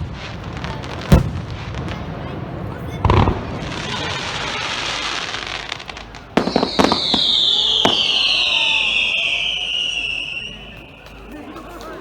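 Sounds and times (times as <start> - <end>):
firework boom: 0.0 - 8.9
firework crackle: 0.0 - 12.0
sharp bangs: 3.0 - 4.9
falling whistle: 6.4 - 11.3.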